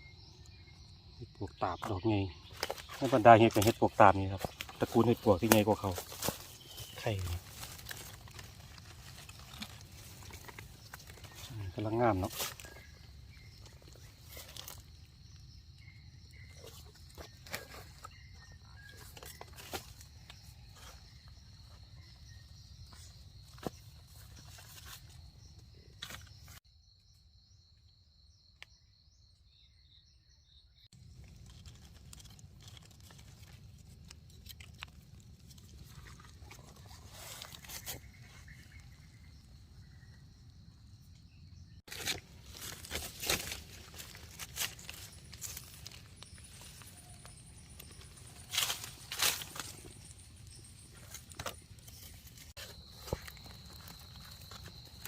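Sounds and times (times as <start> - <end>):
crunching forest-floor litter: 1.7 - 26.6, 30.9 - 41.0, 41.6 - 55.0.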